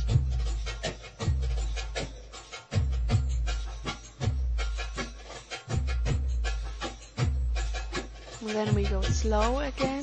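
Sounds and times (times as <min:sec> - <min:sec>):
drum beat music with heavy bass: 0:00.0 - 0:10.0.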